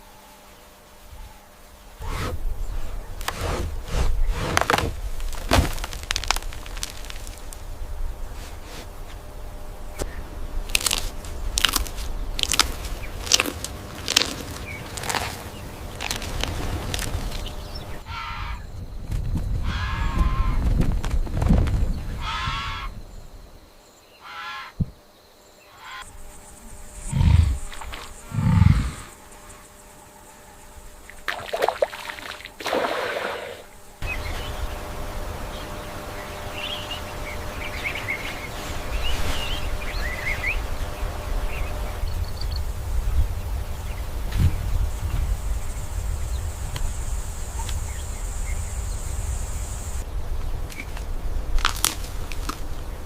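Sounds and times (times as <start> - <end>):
outdoor ambient noise: 0.0 - 53.0
loud low animal calls: 25.7 - 29.5.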